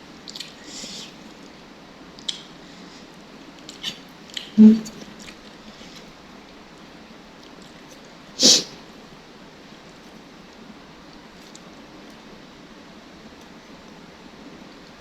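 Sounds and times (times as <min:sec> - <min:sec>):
low hiss: 0:00.0 - 0:06.6, 0:08.1 - 0:15.0
person humming: 0:04.6 - 0:05.1.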